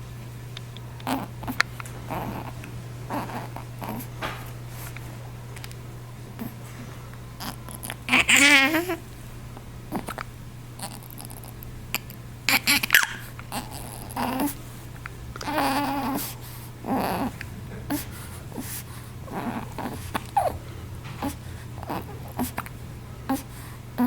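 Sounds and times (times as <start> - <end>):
baby babbling: 1.1 - 4.1, 7.4 - 9.0, 10.8 - 14.6, 15.4 - 20.6, 21.2 - 22.7
baby hiccuping: 7.4 - 9.0, 11.9 - 14.5, 19.3 - 20.6.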